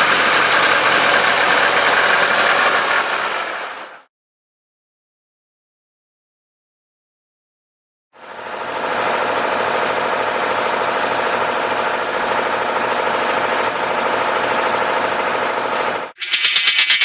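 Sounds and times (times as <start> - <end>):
tractor engine running: 0.0 - 4.0.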